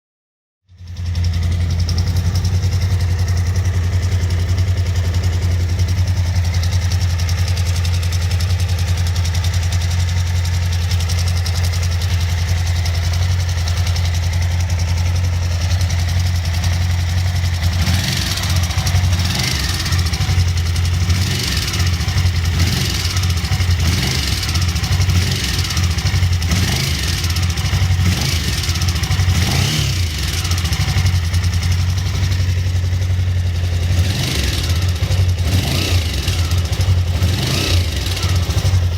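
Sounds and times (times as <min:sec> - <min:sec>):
motorcycle engine idling: 0:00.7 - 0:38.9
engine ticking: 0:00.8 - 0:38.9.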